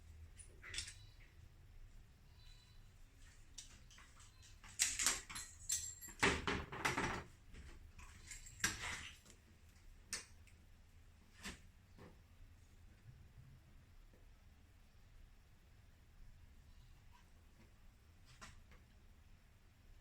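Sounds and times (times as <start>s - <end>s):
metal clinks and knocks: 3.6s - 7.3s.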